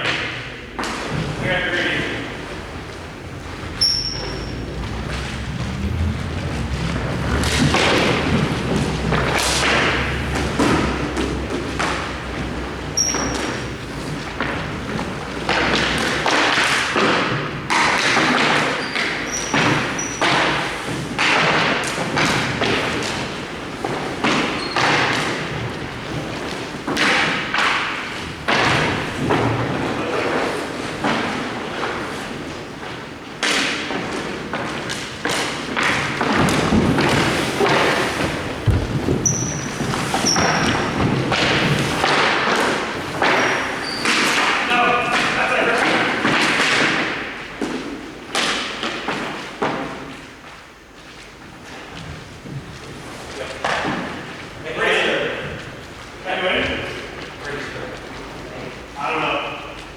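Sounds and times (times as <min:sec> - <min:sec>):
hockey stick and puck strikes: 0:07.5 - 0:12.1, 0:15.4 - 0:25.6, 0:26.9 - 0:30.4, 0:33.4 - 0:50.1.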